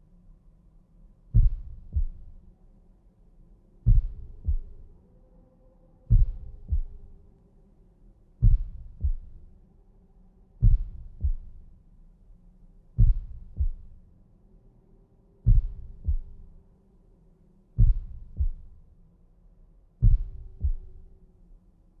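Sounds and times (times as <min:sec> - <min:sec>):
heartbeat thumps: 0:01.4 - 0:02.4, 0:03.9 - 0:04.9, 0:06.1 - 0:07.2, 0:08.4 - 0:09.5, 0:10.6 - 0:11.7, 0:13.0 - 0:14.0, 0:15.4 - 0:16.5, 0:17.8 - 0:18.8, 0:20.0 - 0:21.0.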